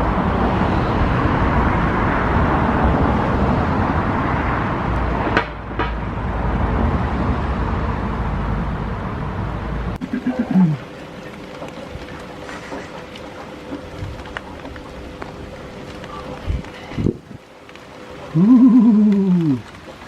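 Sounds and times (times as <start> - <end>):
heavy rain rushing: 15.0 - 20.0.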